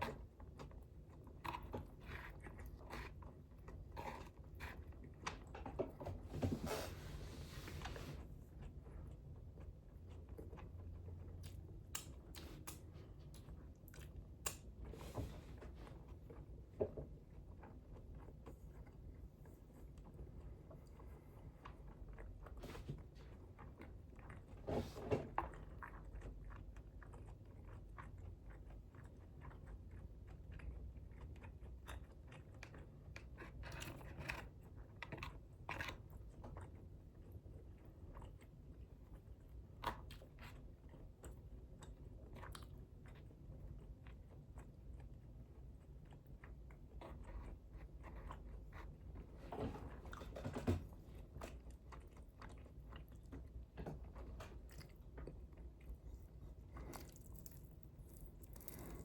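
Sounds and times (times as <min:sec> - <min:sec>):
person chewing and biting food: 0:51.4 - 0:59.0.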